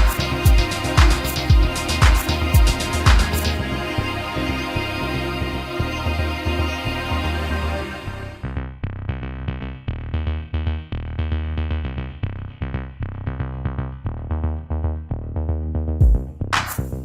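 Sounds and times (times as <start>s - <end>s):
drum-machine beat: 0.0s - 4.0s, 16.0s - 17.0s
synthesizer bass line: 0.0s - 17.0s.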